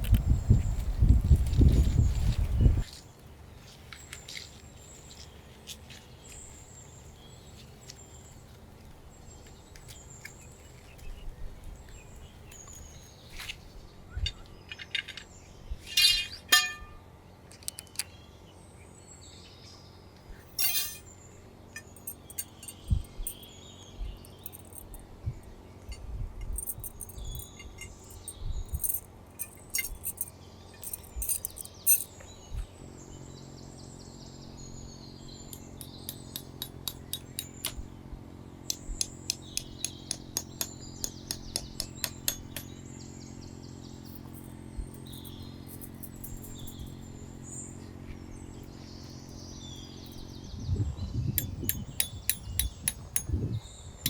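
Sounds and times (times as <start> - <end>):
ringing clink: 16.0 - 17.0, 20.5 - 21.1, 21.8 - 23.6, 25.9 - 32.1, 44.1 - 47.0, 51.4 - 53.6.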